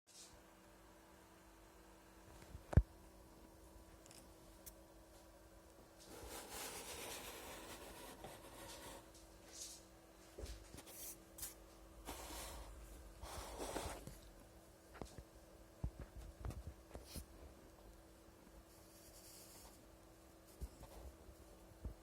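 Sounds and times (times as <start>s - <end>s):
faint steady hum: 0.1s - 22.0s
faint rubbing and scraping: 6.0s - 9.8s.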